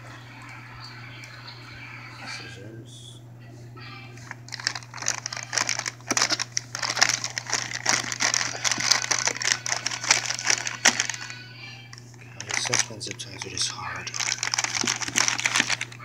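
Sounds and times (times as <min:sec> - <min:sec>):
plastic bag crinkling: 0:04.2 - 0:16.0.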